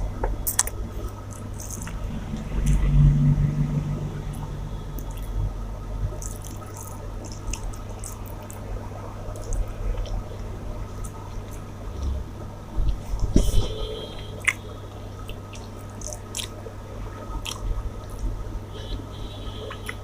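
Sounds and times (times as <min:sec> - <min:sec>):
wet chewing sounds: 0:06.1 - 0:08.7, 0:09.3 - 0:12.2, 0:14.4 - 0:18.4.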